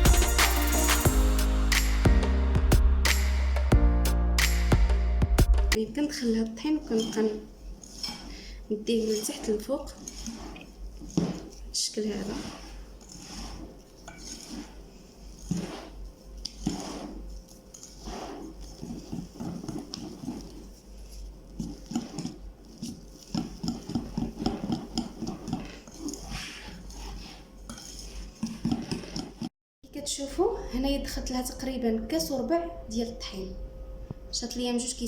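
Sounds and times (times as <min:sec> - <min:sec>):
utensil scraping a mixing bowl: 0:00.0 - 0:02.0, 0:06.4 - 0:29.5.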